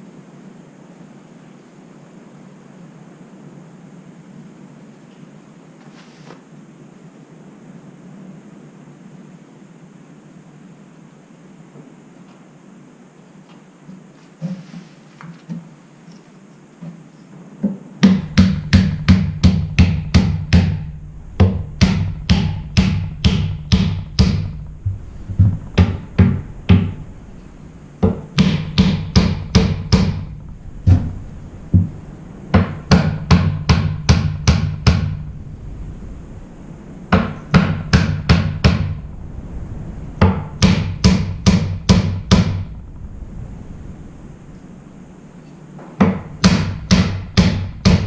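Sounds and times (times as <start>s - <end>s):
sharp hammer blows: 18.0s - 24.6s, 28.0s - 31.2s, 40.2s - 42.8s.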